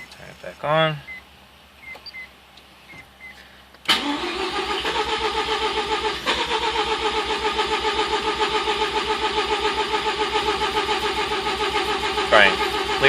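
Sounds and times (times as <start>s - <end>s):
starter cranking engine: 3.9s - 13.0s.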